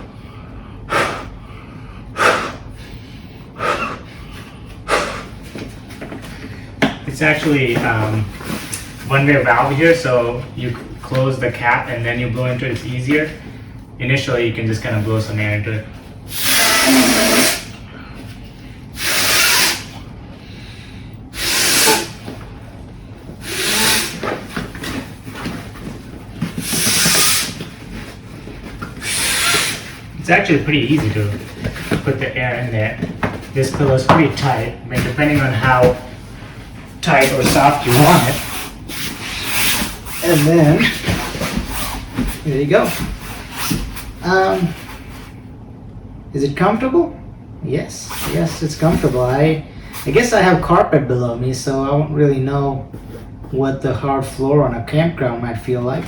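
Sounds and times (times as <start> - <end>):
man blowing breaths into valve: 0.8 - 5.4, 16.3 - 17.9, 18.9 - 22.4, 23.4 - 24.4, 26.5 - 27.6, 29.0 - 30.1.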